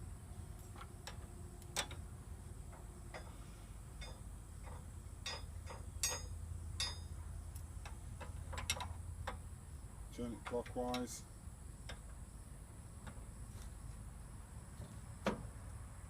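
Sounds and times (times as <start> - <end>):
spanner clinking on metal fitting: 4.0 - 7.1.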